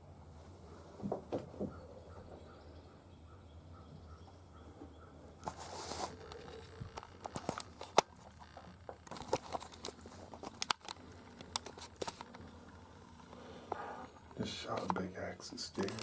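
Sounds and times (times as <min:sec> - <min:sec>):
sharp clicks and knocks: 0:05.4 - 0:12.4
rustling: 0:05.4 - 0:15.0.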